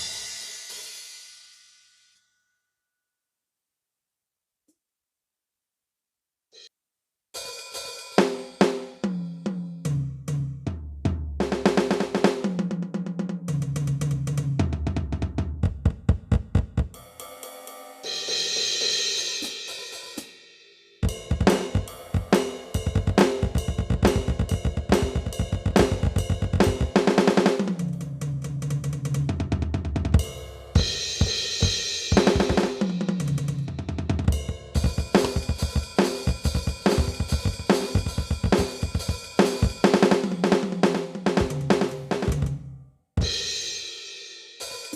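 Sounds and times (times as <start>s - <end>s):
electronic drum beat: 15.5s - 17.0s, 21.0s - 28.0s, 30.8s - 33.5s, 34.1s - 40.4s.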